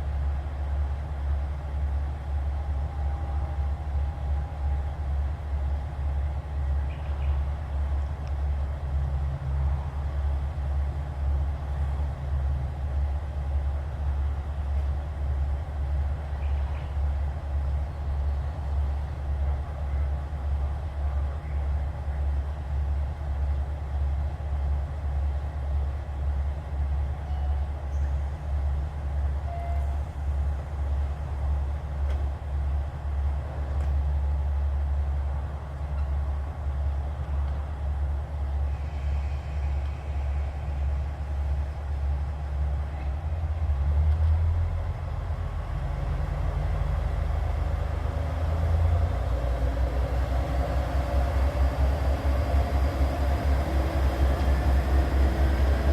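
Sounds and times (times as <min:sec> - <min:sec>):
diesel engine idling: 0:37.8 - 0:55.9.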